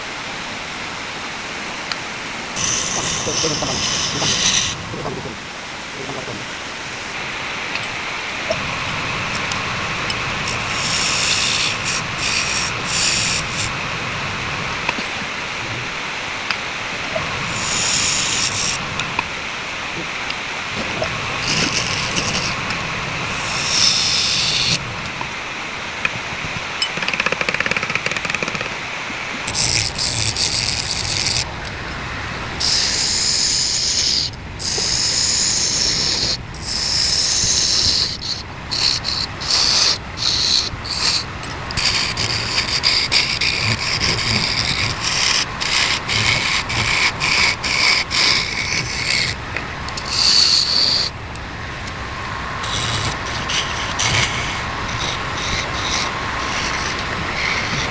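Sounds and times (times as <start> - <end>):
lathe tool scraping spinning wood: 1.3 - 7.2, 8.6 - 19.4, 20.7 - 24.9, 29.4 - 57.9
lathe machine running: 37.6 - 57.9.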